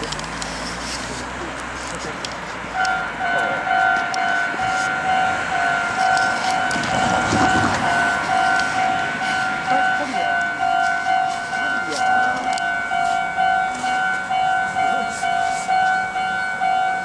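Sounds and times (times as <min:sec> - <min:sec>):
rush of noise: 0:00.3 - 0:13.2
level-crossing bell dinging: 0:02.8 - 0:17.0.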